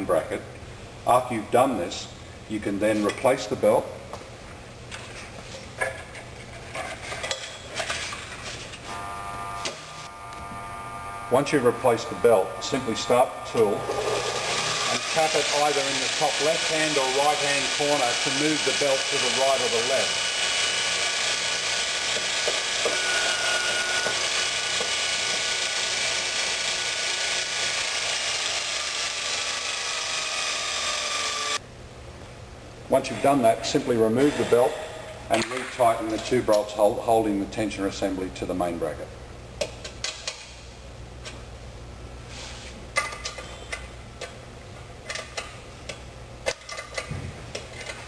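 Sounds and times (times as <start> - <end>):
belt grinder whirring: 8.9 - 31.6.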